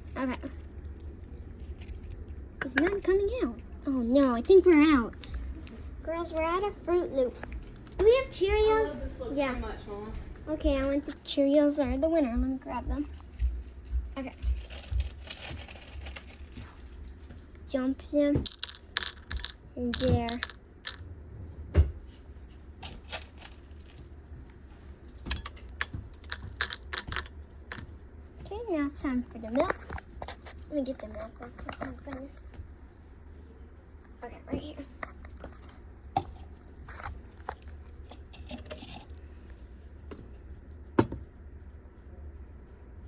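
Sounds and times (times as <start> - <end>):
cereal clattering into a cup: 14.6 - 16.6, 18.4 - 21.0, 22.8 - 24.1, 25.3 - 27.8
toy props tapping and clicking: 18.4 - 21.0, 25.3 - 27.8.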